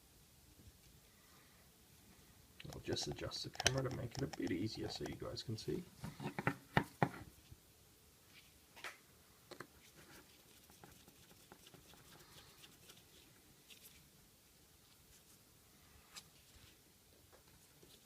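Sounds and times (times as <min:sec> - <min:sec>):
sharp clicks and knocks: 0:02.6 - 0:05.3
faint small ticks and taps: 0:03.5 - 0:05.2.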